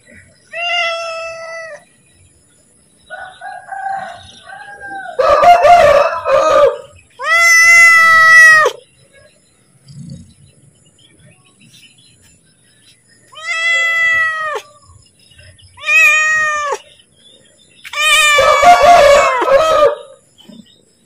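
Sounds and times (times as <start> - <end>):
cat meowing: 0.5 - 1.8, 7.2 - 8.8, 13.3 - 14.8, 15.8 - 16.8, 17.8 - 19.4
rooster crowing: 3.1 - 7.0, 18.2 - 20.2.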